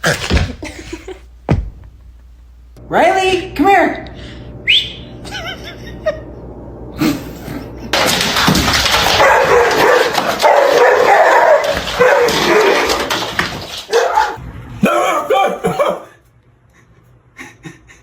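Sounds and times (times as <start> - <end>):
dog barking excitedly: 8.0 - 16.0
dog yipping: 9.2 - 13.0, 13.9 - 14.4.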